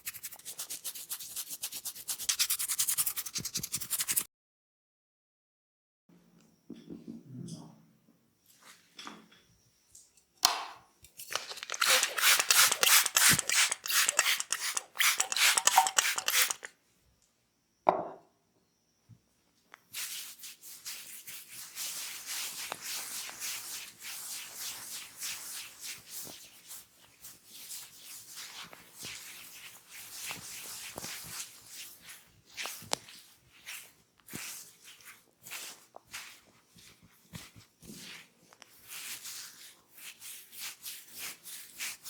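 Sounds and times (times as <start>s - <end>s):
hands rubbing and patting skin: 0.0s - 4.3s, 11.1s - 16.7s, 20.0s - 42.0s.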